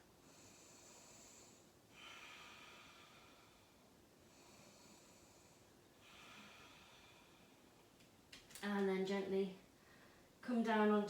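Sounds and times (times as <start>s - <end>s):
slow deep breathing: 0.2s - 7.8s.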